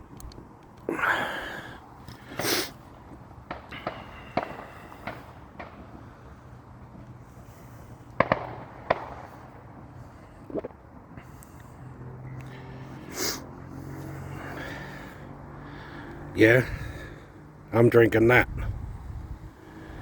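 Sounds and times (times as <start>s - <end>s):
fireworks hissing and crackling: 2.4s - 6.1s, 7.9s - 9.8s
firecracker sharp cracks: 3.5s - 5.8s, 8.2s - 9.4s
fireworks bangs: 3.5s - 5.9s, 8.2s - 9.5s.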